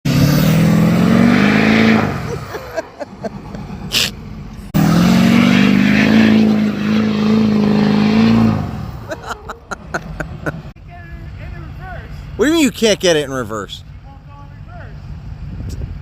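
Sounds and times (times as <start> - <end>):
diesel truck engine revving: 0.0 - 10.8.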